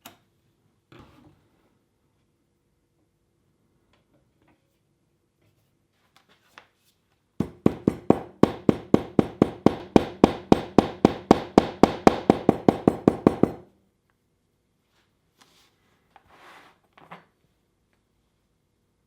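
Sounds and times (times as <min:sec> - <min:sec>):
hammer striking metal on anvil: 0:07.4 - 0:13.6.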